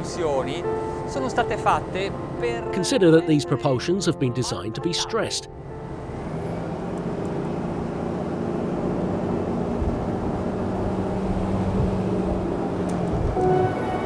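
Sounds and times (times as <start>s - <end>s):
rush of wind and water: 9.1s - 13.4s.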